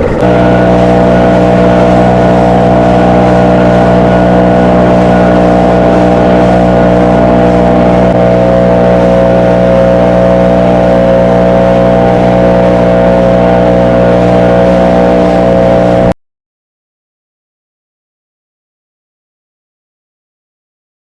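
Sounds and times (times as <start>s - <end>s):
engine running loudly: 0.0s - 16.2s.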